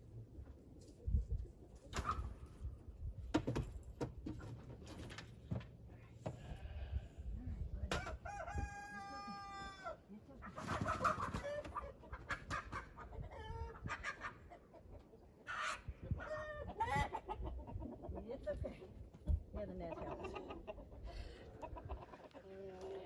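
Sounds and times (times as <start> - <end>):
chickens squawking and clucking: 8.0 - 18.6, 19.8 - 22.6.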